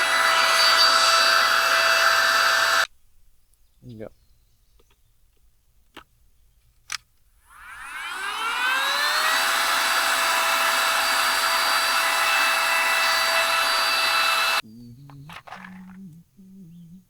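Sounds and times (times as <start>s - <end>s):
electric air blower whining: 0.0s - 2.9s, 7.5s - 14.6s.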